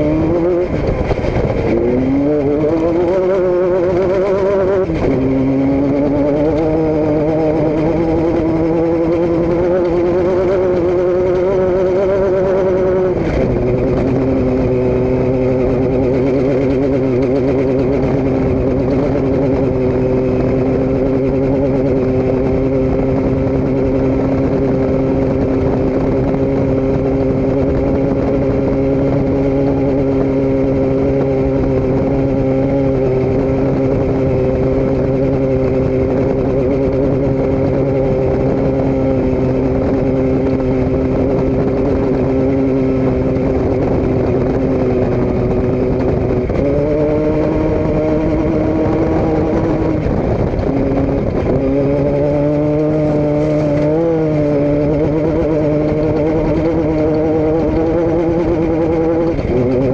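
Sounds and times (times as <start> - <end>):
vehicle engine droning: 0.0 - 59.9.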